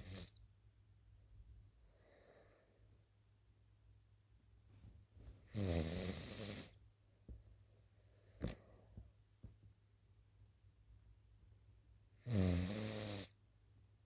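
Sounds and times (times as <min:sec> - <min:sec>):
faint breath: 0:01.2 - 0:03.1
loud buzzing snore: 0:05.6 - 0:06.8, 0:12.2 - 0:13.4.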